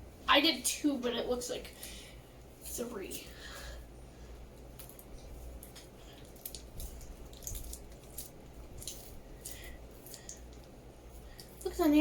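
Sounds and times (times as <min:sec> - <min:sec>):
play dough squishing and crackling: 0:04.6 - 0:12.0.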